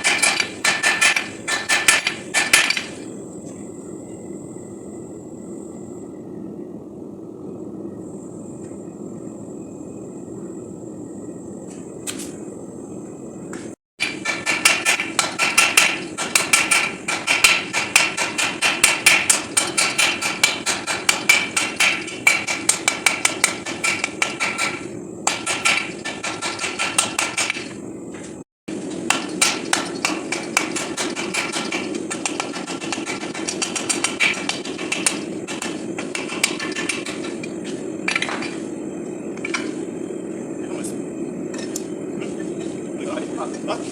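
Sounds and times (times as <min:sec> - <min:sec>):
hammer striking steel on anvil: 0:00.0 - 0:03.0, 0:14.0 - 0:27.7, 0:29.1 - 0:37.4.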